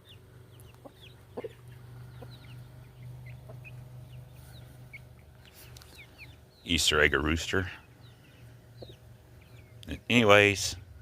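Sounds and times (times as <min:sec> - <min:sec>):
chickens clucking: 0:00.0 - 0:10.3
low steady hum: 0:00.0 - 0:11.0.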